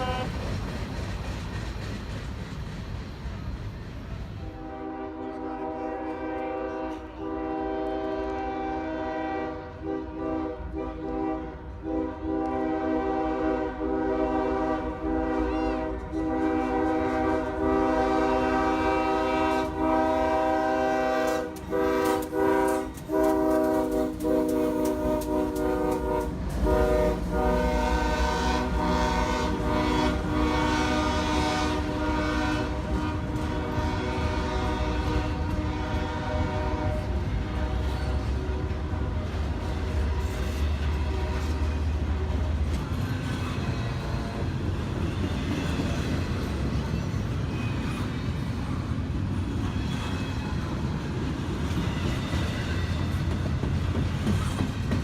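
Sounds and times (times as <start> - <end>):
locomotive air horn blasts: 0.0 - 0.4, 4.4 - 42.5
rumble of passing train: 0.0 - 55.0.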